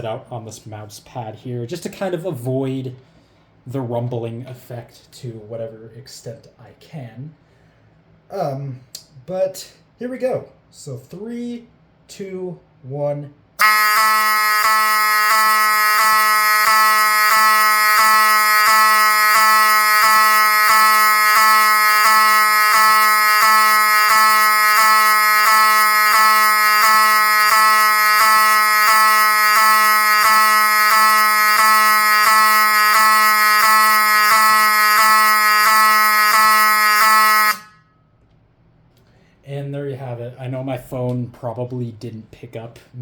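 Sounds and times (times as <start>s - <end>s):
fire alarm horn sweeping tone: 13.6s - 38.1s.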